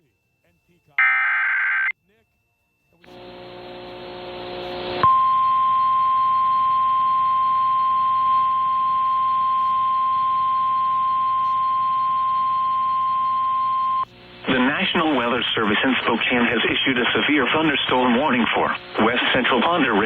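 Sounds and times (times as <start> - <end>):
radio static hiss: 1.0 - 1.9, 3.0 - 5.0, 9.0 - 20.0
steady alarm tone: 5.0 - 14.1.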